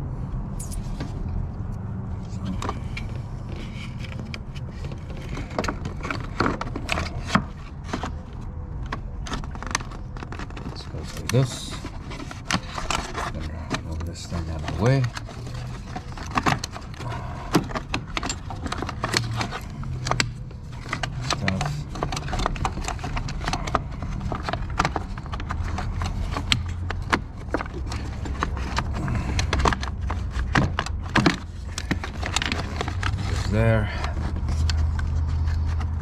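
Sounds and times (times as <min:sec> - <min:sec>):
clicks and knocks of parts fitted: 0:08.8 - 0:33.4.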